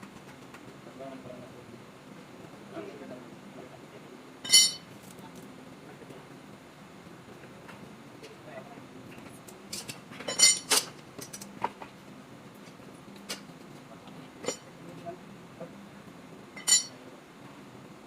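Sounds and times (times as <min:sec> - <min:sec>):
metal tools clinking together: 0:04.5 - 0:04.8, 0:09.7 - 0:11.4, 0:14.4 - 0:14.6, 0:16.6 - 0:16.9.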